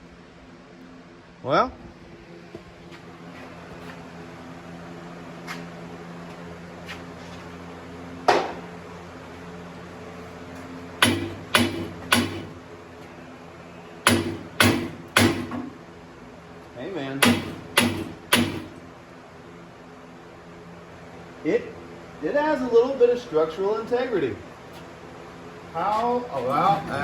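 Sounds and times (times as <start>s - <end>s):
low electrical hum: 0.0s - 27.0s
hammer striking steel tube: 11.0s - 12.6s, 14.0s - 15.7s, 17.2s - 18.8s.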